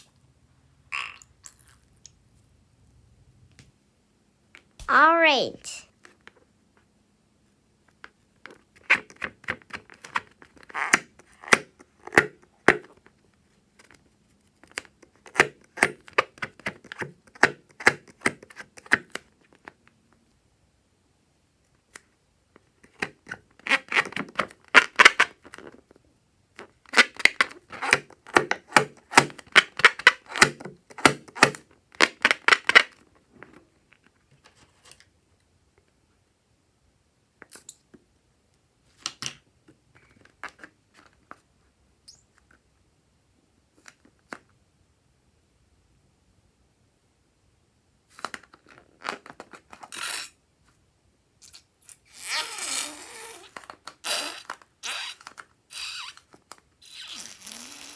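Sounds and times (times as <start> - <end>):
slime squeezed by hand: 1.0 - 2.0, 51.5 - 56.2, 56.8 - 57.9.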